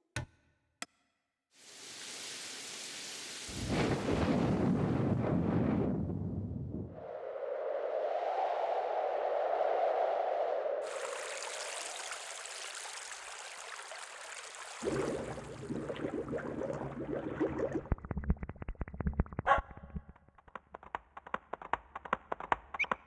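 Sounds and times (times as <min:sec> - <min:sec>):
fast run of clicks: 0:18.1 - 0:23.0.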